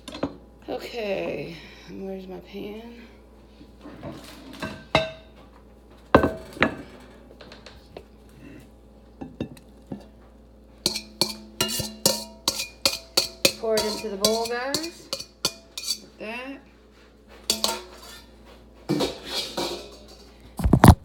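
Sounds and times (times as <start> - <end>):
pans and dishes knocking: 6.2 - 7.0, 10.9 - 16.0, 17.5 - 18.3, 18.9 - 21.0
utensil clinking bowl: 10.9 - 16.2, 17.5 - 20.4.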